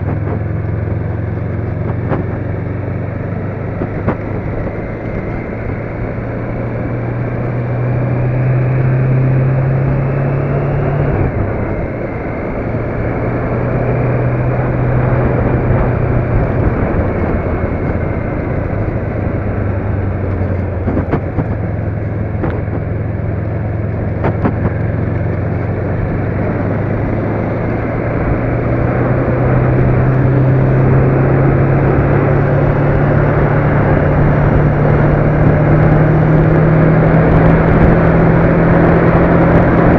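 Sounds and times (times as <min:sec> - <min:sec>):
road noise: 0:00.0 - 0:39.9
vehicle engine running: 0:00.0 - 0:39.9.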